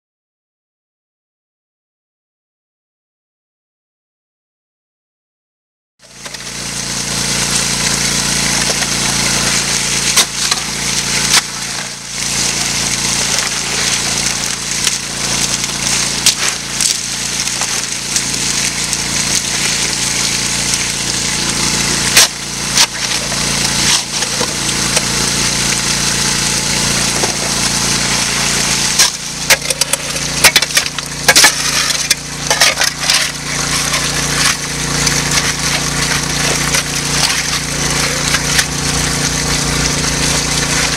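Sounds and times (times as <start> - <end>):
motor hum: 6.0 - 40.9
water rushing: 6.2 - 40.9
gravel and rocks clattering: 29.0 - 38.6.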